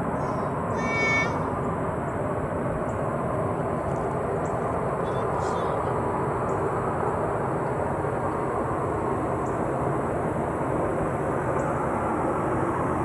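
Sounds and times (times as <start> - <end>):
rumbling drone from the sky: 0.0 - 13.0.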